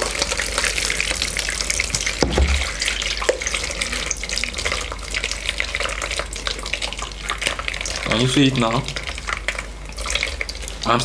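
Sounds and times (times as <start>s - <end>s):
liquid splashing and trickling: 0.0s - 11.0s
dull knock: 2.0s - 2.8s.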